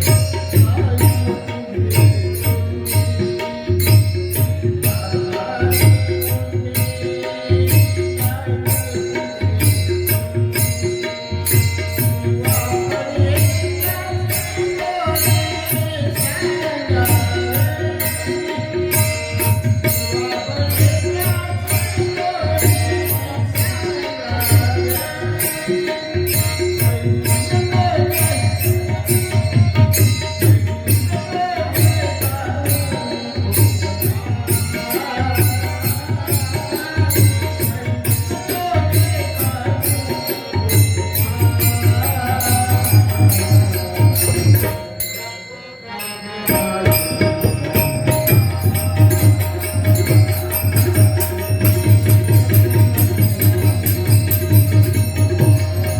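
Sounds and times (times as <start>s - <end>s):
bright high percussion strokes: 0.0s - 55.9s
devotional singing: 19.9s - 29.7s, 31.1s - 45.2s.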